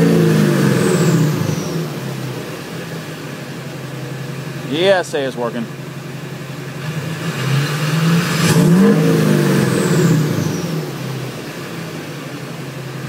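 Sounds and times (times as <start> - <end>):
diesel engine revving: 0.0 - 3.2, 6.4 - 13.0.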